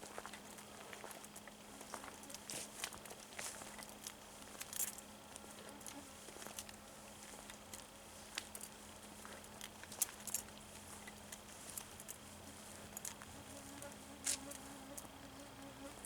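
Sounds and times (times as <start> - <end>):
footsteps on forest floor: 0.0 - 4.8
faint steady hum: 0.0 - 16.0.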